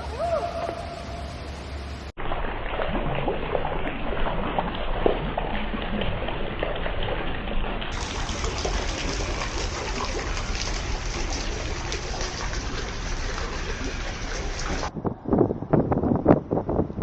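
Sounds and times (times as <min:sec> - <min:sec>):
flowing water rushing: 0:07.8 - 0:14.9.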